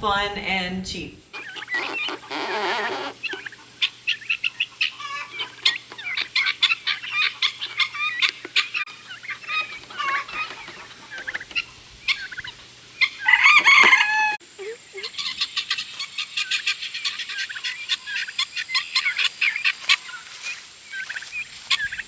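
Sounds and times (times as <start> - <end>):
turkeys and chickens calling: 1.2 - 22.0.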